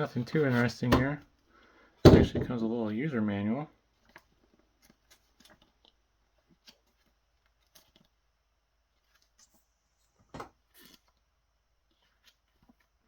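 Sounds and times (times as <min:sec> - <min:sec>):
knock: 0:02.1 - 0:02.5.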